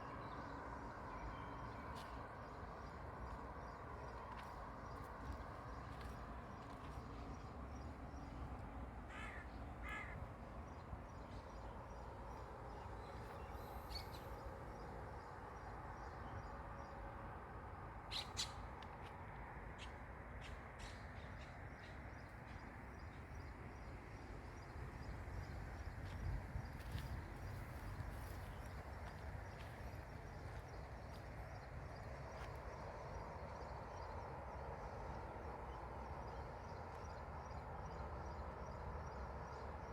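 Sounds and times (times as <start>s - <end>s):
crow cawing: 9.1s - 10.2s.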